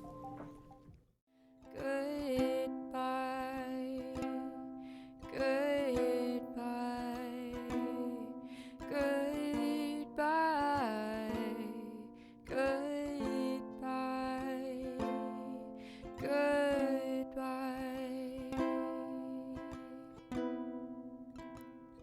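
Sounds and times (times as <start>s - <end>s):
ukulele playing: 0.0s - 1.0s, 1.6s - 22.0s
person singing long notes: 1.8s - 20.7s.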